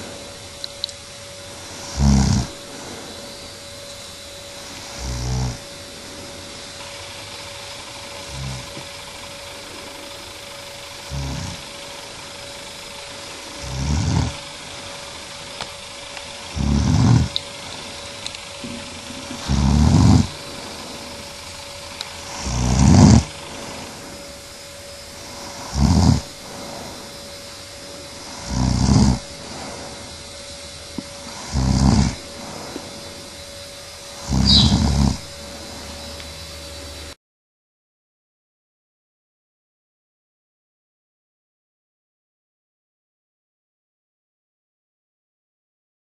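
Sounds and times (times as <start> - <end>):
woman snoring: 1.5 - 3.4, 4.6 - 6.8, 8.2 - 9.0, 11.0 - 12.0, 13.0 - 15.1, 16.4 - 21.4, 22.1 - 24.4, 25.0 - 30.3, 31.2 - 33.2, 34.1 - 36.1.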